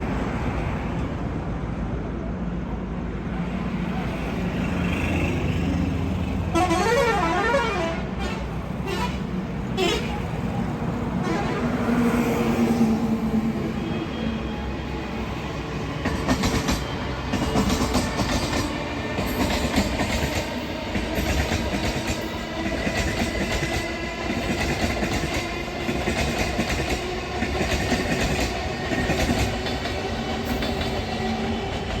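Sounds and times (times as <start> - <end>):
wheels clacking over rail joints: 15.9 - 32.0.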